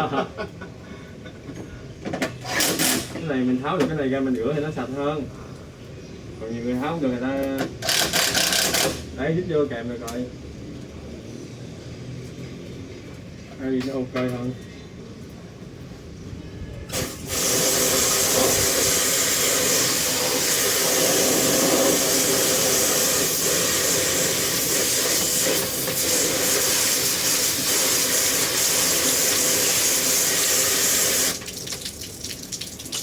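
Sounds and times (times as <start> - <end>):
water spraying hard: 16.9 - 33.0.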